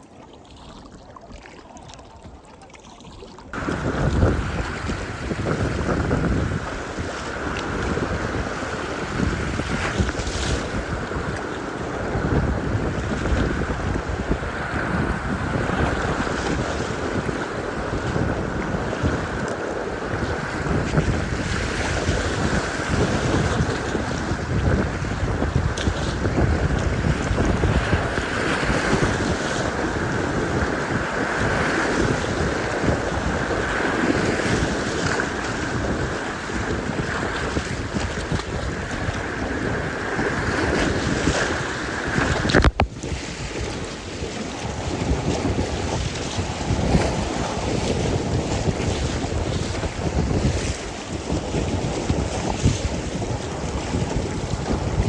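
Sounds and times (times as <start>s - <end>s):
river water rushing: 0.0s - 9.1s
wind buffeting microphone: 3.2s - 55.0s.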